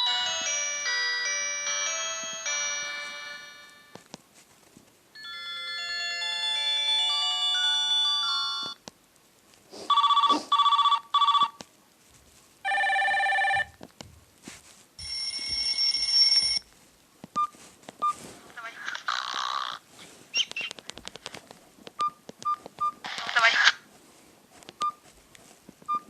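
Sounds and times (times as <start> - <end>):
electronic ringtone melody: 0.0 - 4.0, 5.2 - 8.8, 9.9 - 11.5, 15.0 - 16.6
electronic ring tones: 6.8 - 8.8, 9.9 - 11.6, 12.7 - 13.7, 15.0 - 16.6
short phone beeps: 9.9 - 11.6.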